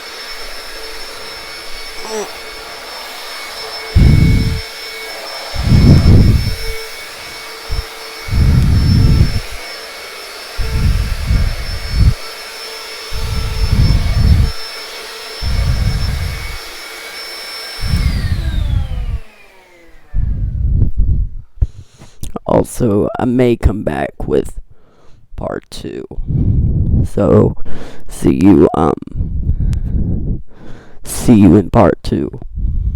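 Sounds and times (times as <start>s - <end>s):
vacuum cleaner whining: 0.0s - 21.2s
vacuum motor spinning down: 0.0s - 21.2s.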